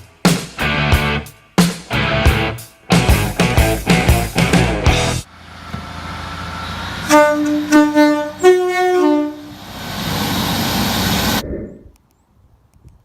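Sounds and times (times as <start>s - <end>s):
train rumble: 5.3s - 11.4s
train horn blasts: 7.0s - 9.6s.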